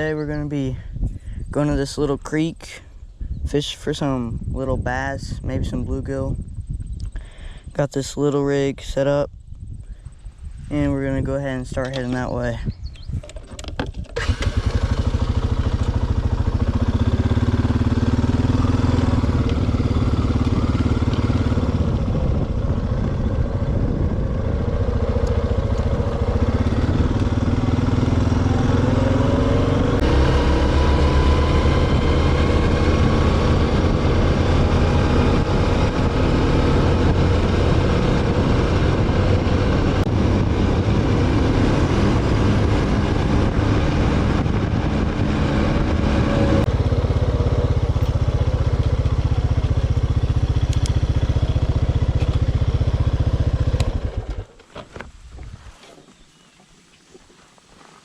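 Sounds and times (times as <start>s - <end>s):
vehicle engine running while driving: 14.4s - 54.6s.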